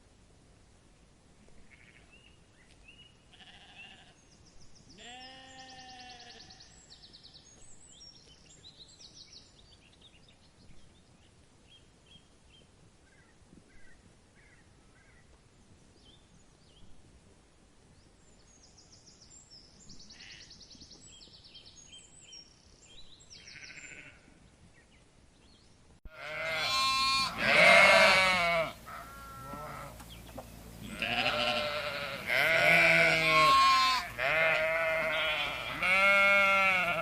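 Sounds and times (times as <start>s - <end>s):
birds chirping and trilling: 1.8s - 10.4s, 18.8s - 37.0s
sheep bleating: 3.3s - 4.2s, 23.4s - 24.3s, 26.1s - 30.0s, 30.8s - 37.0s.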